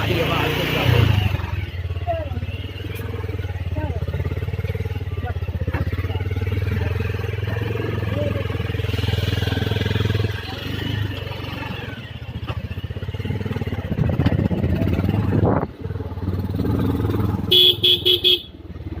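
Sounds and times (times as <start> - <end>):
motorcycle engine running: 0.0 - 19.0
horn honking: 17.4 - 18.6.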